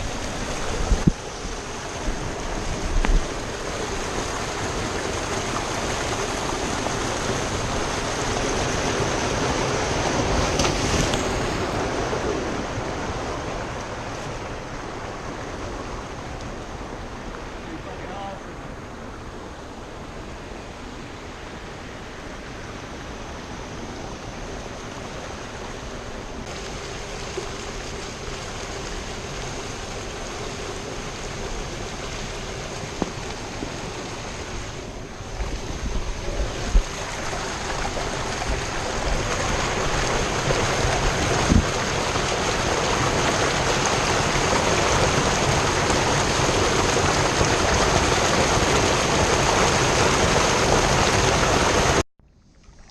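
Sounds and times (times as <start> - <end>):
wind on microphone: 0.0 - 17.2, 31.1 - 52.0
rushing water: 0.0 - 52.9.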